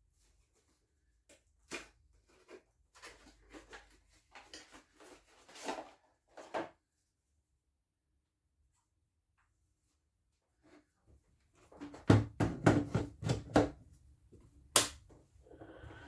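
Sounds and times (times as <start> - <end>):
parts and packaging handled: 1.6 - 6.8.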